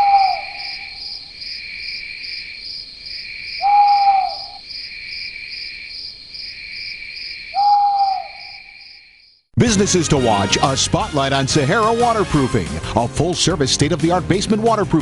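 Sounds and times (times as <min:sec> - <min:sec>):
single-pitched hooting call: 0:00.0 - 0:01.0, 0:03.6 - 0:04.6, 0:07.6 - 0:08.8
insect chorus trilling: 0:00.0 - 0:09.4.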